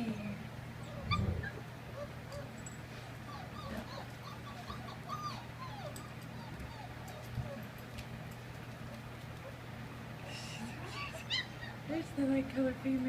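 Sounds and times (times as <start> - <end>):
puppies whimpering: 0.8 - 7.8, 10.7 - 12.0.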